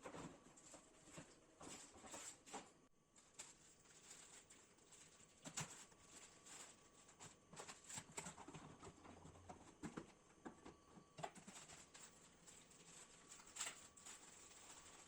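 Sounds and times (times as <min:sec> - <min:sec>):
packaging rustling and clicking: 0:11.2 - 0:15.0.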